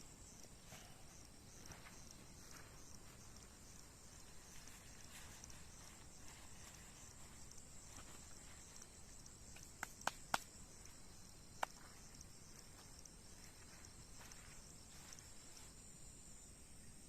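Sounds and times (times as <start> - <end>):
crickets chirping: 0.0 - 17.0.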